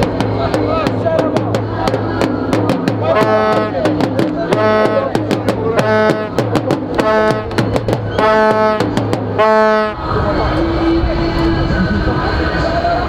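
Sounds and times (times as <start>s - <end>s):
quick steady drumbeat: 0.0s - 9.6s
brassy repeating phrase: 3.0s - 5.2s, 5.8s - 7.6s, 8.2s - 10.0s
low drone: 9.7s - 13.0s.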